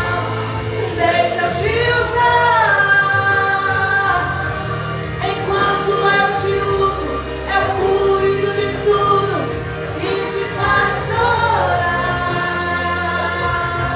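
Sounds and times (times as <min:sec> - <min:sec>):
person singing gospel song: 0:00.0 - 0:13.9
sustained instrumental backing: 0:00.0 - 0:13.9.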